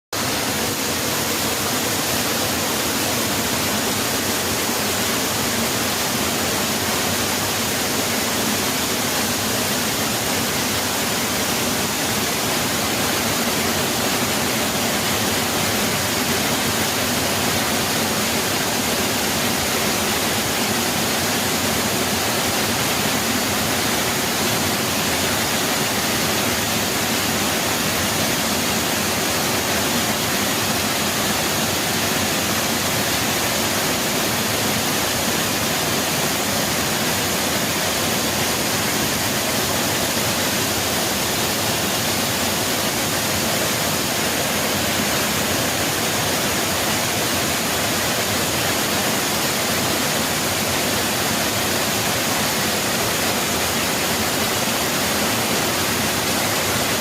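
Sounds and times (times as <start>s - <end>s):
waterfall rushing: 0.2s - 57.0s.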